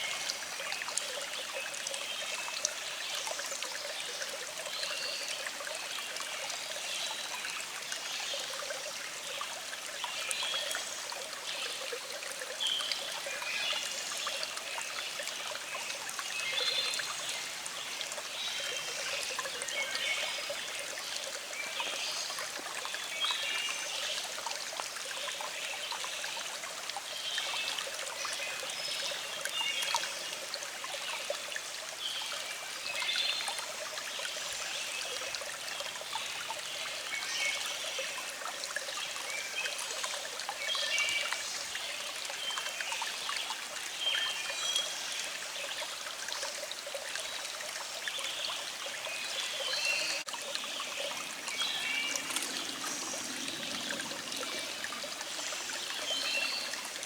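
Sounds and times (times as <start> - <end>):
stream trickling: 0.0 - 57.0.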